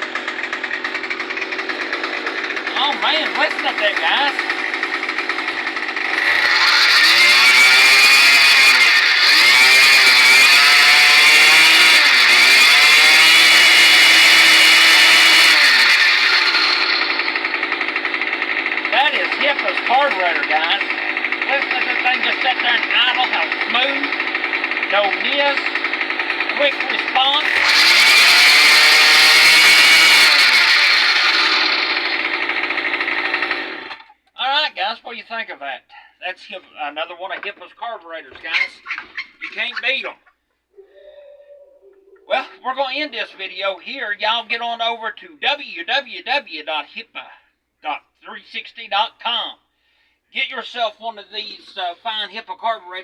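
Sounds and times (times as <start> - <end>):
string trimmer engine revving: 0.0 - 34.2.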